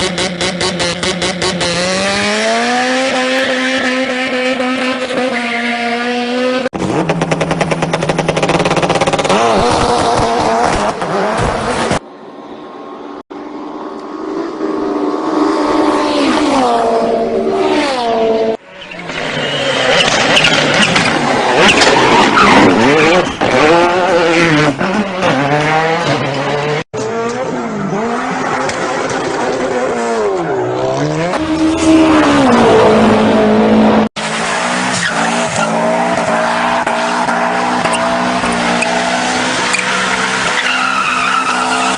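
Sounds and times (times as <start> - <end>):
tyres squealing: 34.5 - 41.9.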